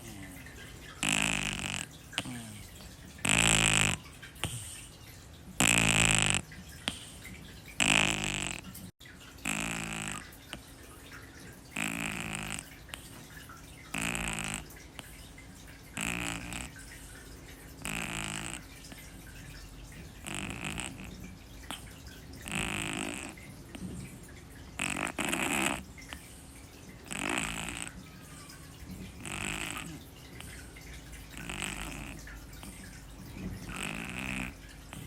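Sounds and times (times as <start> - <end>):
kitten snoring: 0.0 - 4.8, 5.6 - 7.1, 7.8 - 8.8, 9.4 - 10.4, 11.7 - 13.2, 13.9 - 14.8, 15.9 - 16.9, 17.8 - 19.0, 20.2 - 21.8, 22.4 - 23.8, 24.8 - 26.2, 27.0 - 28.4, 29.2 - 30.6, 31.3 - 35.0.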